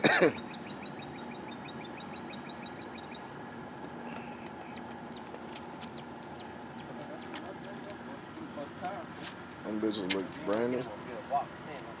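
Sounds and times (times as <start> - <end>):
outdoor background noise: 0.0 - 12.0
bird chirping rapidly: 0.3 - 7.7.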